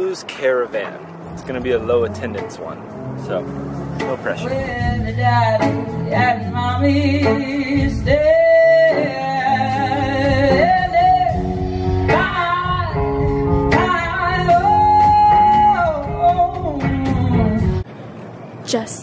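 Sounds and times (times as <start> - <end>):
blues band playing: 0.0 - 17.8
person singing: 4.4 - 17.8.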